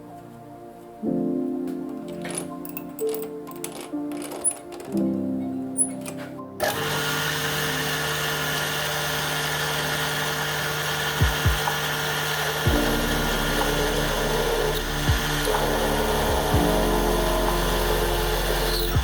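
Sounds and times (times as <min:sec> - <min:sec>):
machine tool motor running: 0:06.6 - 0:19.0.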